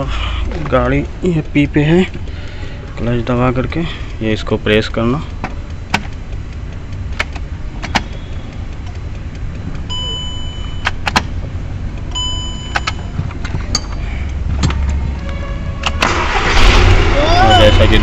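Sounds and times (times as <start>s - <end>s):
car key and control clicks: 0.0s - 16.3s
low engine rumble: 0.0s - 18.0s
electronic dashboard beeps: 6.8s - 14.4s.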